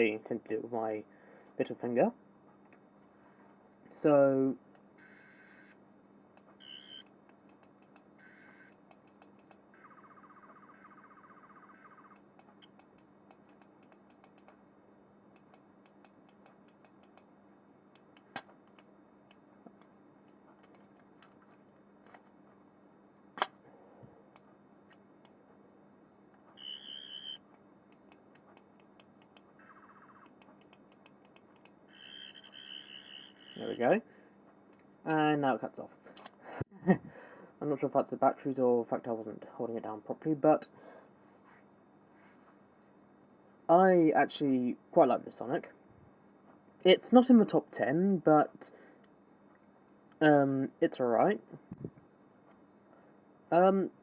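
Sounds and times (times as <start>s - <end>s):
toy sharp irregular clicks: 6.4s - 14.6s, 15.4s - 17.3s, 26.4s - 33.7s
toy short high beeps: 6.6s - 7.1s, 8.2s - 8.8s, 26.6s - 27.4s, 31.9s - 33.8s
pulsing buzzy tone: 8.2s - 8.8s, 9.8s - 12.2s, 31.9s - 33.8s.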